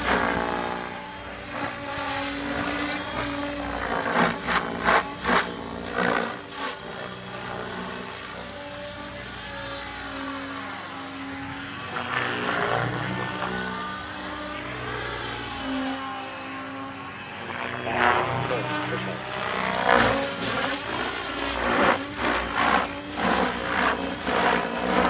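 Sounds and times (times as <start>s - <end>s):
rc helicopter rotor whirring: 0.0s - 25.0s.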